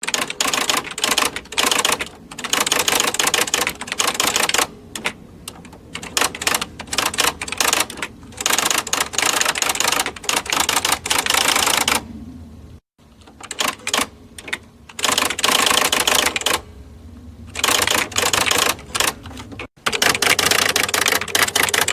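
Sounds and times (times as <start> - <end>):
electric typewriter key strikes: 0.0 - 12.0, 17.5 - 21.9
typewriter motor hum: 0.0 - 12.0, 13.2 - 16.6, 17.5 - 21.9.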